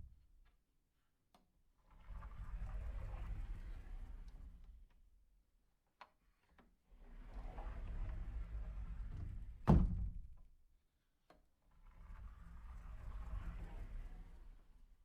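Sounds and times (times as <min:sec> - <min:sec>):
door shutting thud: 0:09.7 - 0:10.3
low rustling noise: 0:12.0 - 0:15.0.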